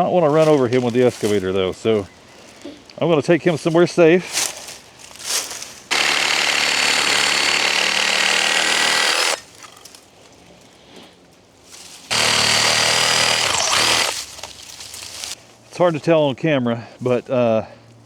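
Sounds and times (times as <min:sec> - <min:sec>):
reciprocating saw cutting roots: 0:05.9 - 0:09.8, 0:12.1 - 0:15.4.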